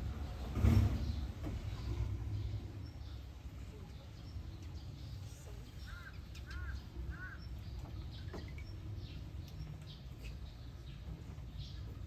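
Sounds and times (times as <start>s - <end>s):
low outdoor rumble: 0.0s - 12.0s
short arched bird calls: 5.8s - 7.7s.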